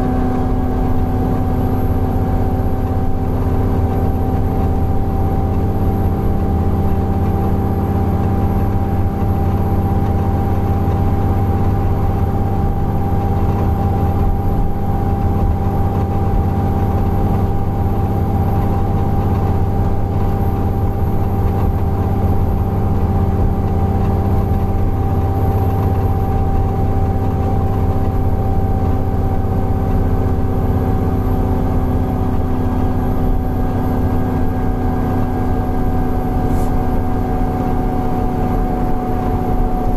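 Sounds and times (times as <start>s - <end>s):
bus engine drone with high wheeze: 0.0s - 39.9s.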